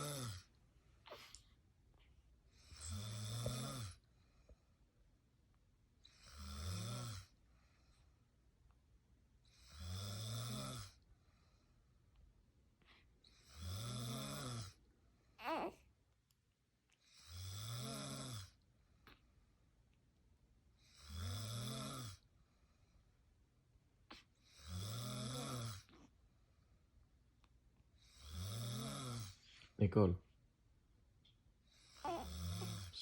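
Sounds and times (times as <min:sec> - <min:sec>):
woman snoring: 0:00.0 - 0:00.5, 0:02.6 - 0:04.0, 0:06.1 - 0:07.3, 0:09.6 - 0:11.0, 0:13.4 - 0:14.8, 0:17.2 - 0:18.6, 0:21.0 - 0:22.2, 0:24.5 - 0:25.9, 0:28.1 - 0:29.4, 0:31.8 - 0:33.0.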